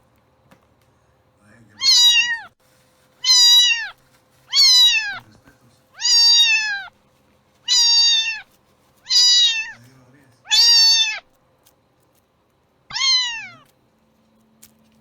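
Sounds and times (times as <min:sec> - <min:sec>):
cat meowing: 0:01.8 - 0:02.6, 0:03.2 - 0:05.2, 0:06.0 - 0:06.9, 0:07.6 - 0:09.8, 0:10.5 - 0:11.3, 0:12.9 - 0:13.7.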